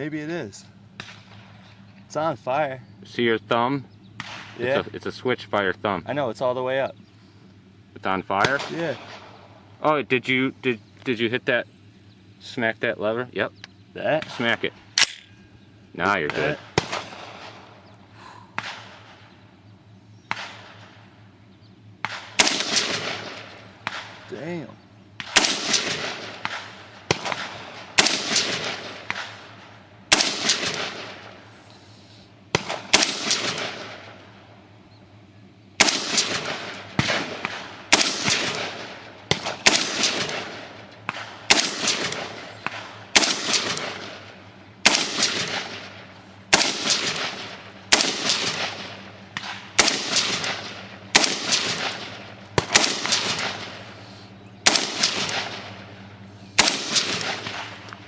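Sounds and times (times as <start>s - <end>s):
rifle shots: 0.9s - 1.9s, 4.2s - 4.8s, 8.4s - 9.6s, 14.2s - 15.3s, 16.1s - 17.9s, 18.6s - 19.4s, 20.3s - 21.2s, 22.0s - 24.5s, 25.2s - 31.5s, 32.5s - 34.4s, 35.8s - 58.0s.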